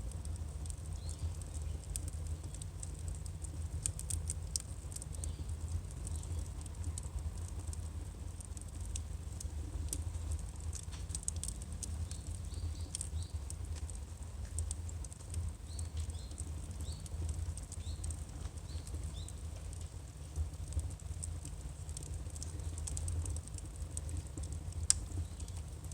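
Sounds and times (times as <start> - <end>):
firewood crackling and popping: 0.0 - 25.9.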